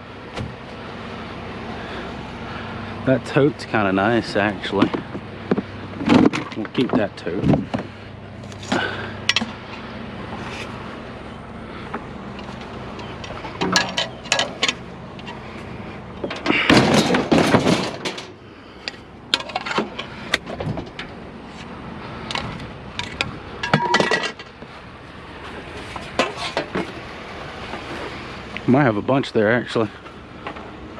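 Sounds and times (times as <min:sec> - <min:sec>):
junk knocking and rattling: 0:04.6 - 0:08.0, 0:11.9 - 0:15.4, 0:16.2 - 0:18.4, 0:19.3 - 0:21.2.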